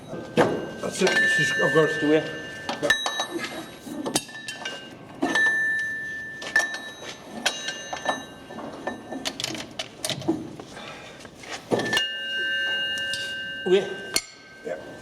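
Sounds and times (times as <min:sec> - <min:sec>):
steel knocking and clinking: 0:00.0 - 0:10.4.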